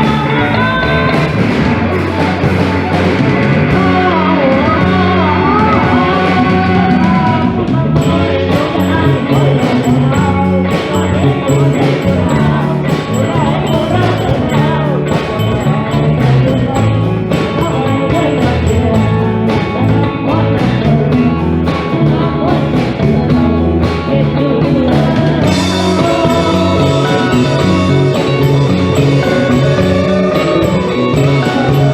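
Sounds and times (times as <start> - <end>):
band music: 0.0 - 31.9
drums beating: 0.0 - 31.9.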